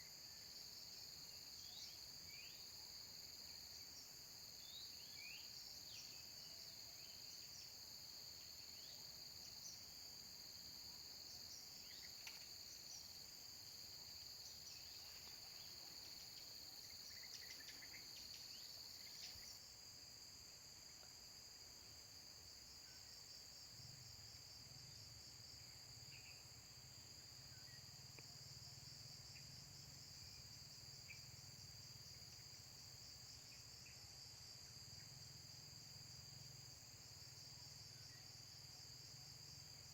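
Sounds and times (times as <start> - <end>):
insects trilling: 0.0 - 20.1.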